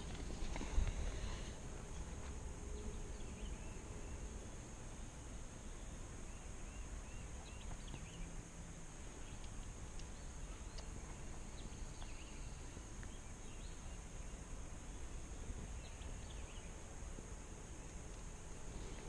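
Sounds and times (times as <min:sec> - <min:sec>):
bird chirps: 0:05.6 - 0:08.3.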